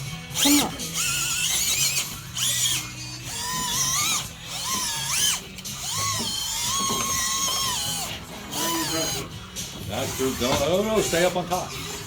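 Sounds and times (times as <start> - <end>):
electric motor and gears whining: 0.0 - 12.0.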